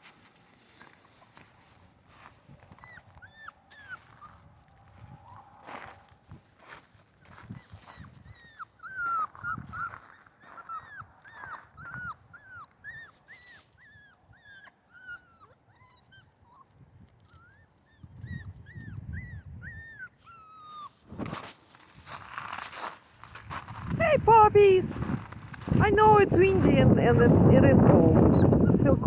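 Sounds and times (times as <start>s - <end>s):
puppies whining: 2.8s - 4.5s, 7.6s - 21.0s, 25.8s - 29.0s
wind rumbling on microphone: 4.3s - 5.6s, 9.4s - 9.9s, 18.0s - 19.9s, 23.4s - 29.0s.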